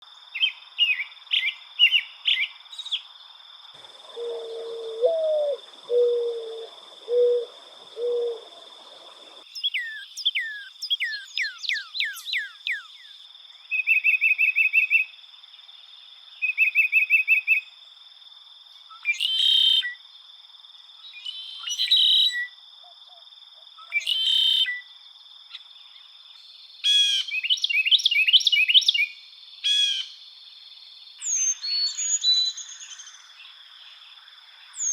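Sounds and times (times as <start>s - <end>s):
high insect drone: 0.1s - 9.6s
dove cooing: 3.8s - 9.4s
birds chirping: 3.8s - 13.1s.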